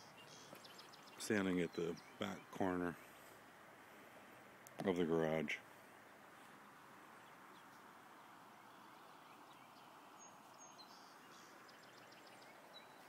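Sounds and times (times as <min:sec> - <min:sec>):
faint high bird chirps: 0:08.7 - 0:13.0.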